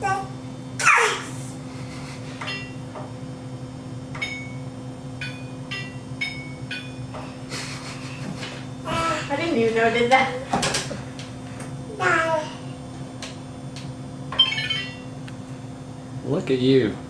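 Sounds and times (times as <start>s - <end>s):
steady low hum: 0.0s - 17.0s
baby squealing: 0.8s - 1.3s
washing machine beeps: 4.1s - 7.1s, 14.3s - 15.1s.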